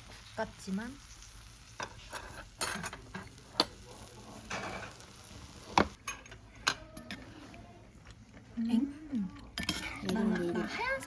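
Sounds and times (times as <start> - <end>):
tableware clinking against dishes: 1.8 - 3.8, 4.5 - 5.0, 5.8 - 7.3, 9.6 - 10.8.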